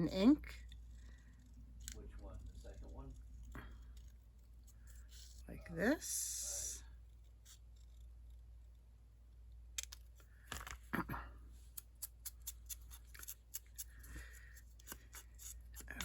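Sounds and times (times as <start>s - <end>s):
scissors snipping paper: 0.5s - 5.5s, 11.7s - 16.0s.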